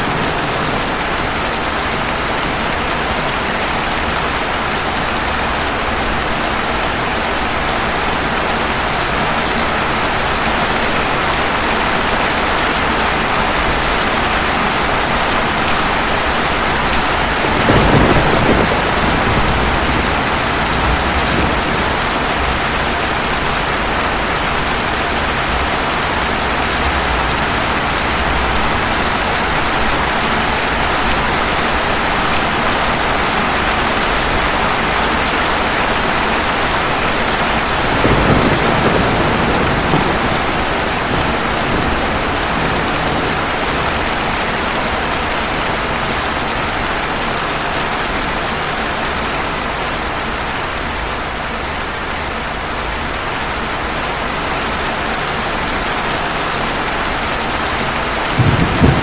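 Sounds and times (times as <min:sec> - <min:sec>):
heavy rain hissing: 0:00.0 - 0:59.0
low thunder rumbling: 0:13.6 - 0:31.5, 0:36.4 - 0:45.4, 0:58.0 - 0:59.0
thunderclap: 0:14.7 - 0:31.4, 0:36.1 - 0:45.3, 0:58.0 - 0:59.0.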